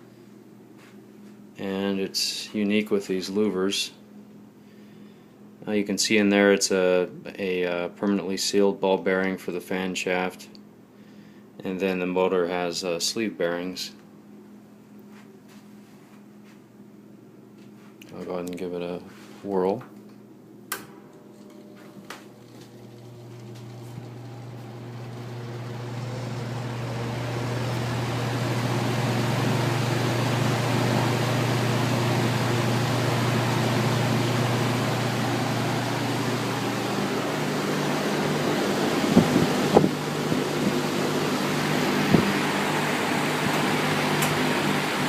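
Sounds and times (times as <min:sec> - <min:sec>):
fan motor humming and air rushing: 0:20.4 - 0:45.0
fan switch click: 0:20.7 - 0:22.3, 0:43.5 - 0:44.4.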